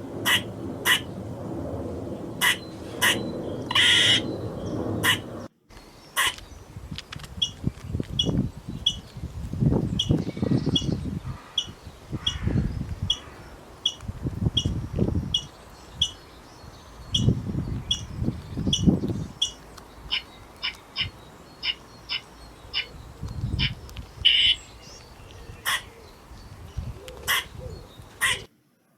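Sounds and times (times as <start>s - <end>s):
low irregular rumbles: 0.0s - 28.2s
squirrel chirping: 2.4s - 4.4s, 7.4s - 9.1s, 9.8s - 28.5s.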